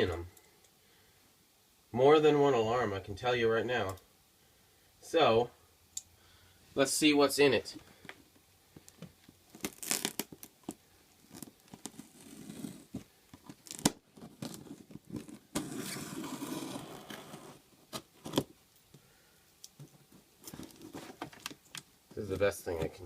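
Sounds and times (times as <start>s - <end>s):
cardboard tearing: 9.5s - 10.6s, 11.2s - 18.5s.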